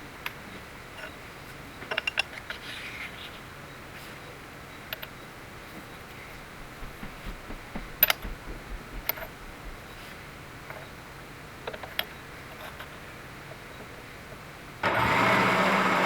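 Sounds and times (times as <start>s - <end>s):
metal parts and tools clinking: 1.9s - 2.6s, 11.7s - 12.9s.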